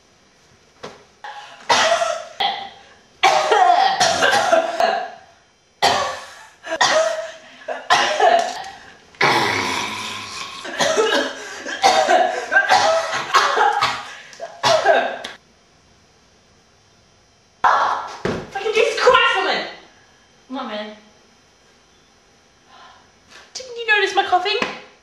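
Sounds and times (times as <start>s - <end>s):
person coughing loudly: 1.3s - 5.2s, 5.8s - 15.2s.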